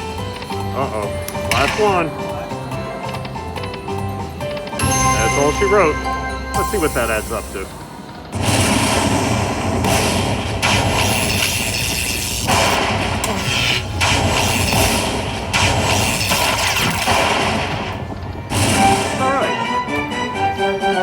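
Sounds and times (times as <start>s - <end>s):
slot machine electronic win sounds: 0.0s - 11.3s, 18.2s - 21.0s.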